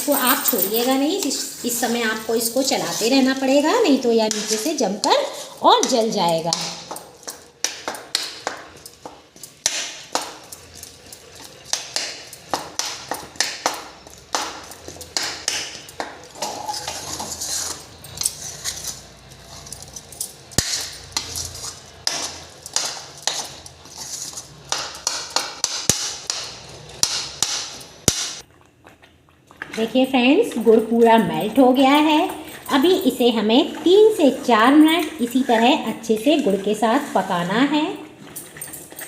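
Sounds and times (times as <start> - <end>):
metal spoon scraping a pan: 0.0 - 28.0.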